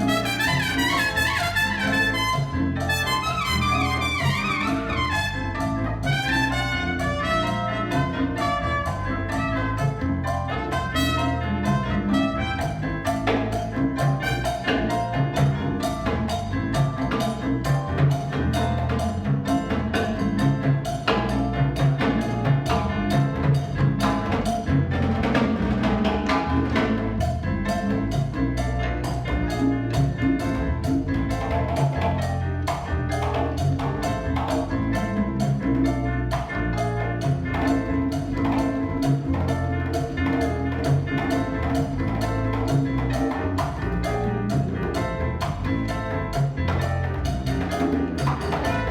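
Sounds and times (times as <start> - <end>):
trumpet: 0.0 - 13.3, 14.2 - 15.1, 48.6 - 48.9
bass line: 0.0 - 48.9
hand drums and timbales: 0.0 - 48.9
piano: 0.0 - 48.9.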